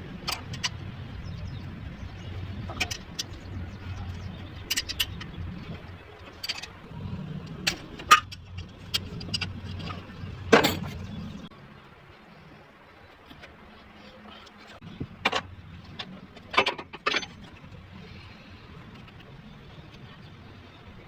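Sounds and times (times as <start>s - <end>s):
sharp clicks and ticks: 2.5s - 6.8s.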